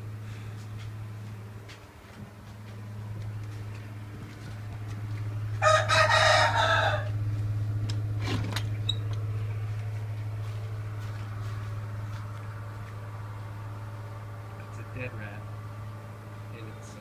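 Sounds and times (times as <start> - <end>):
steady low hum: 0.0 - 17.0
rooster crowing: 5.5 - 7.2.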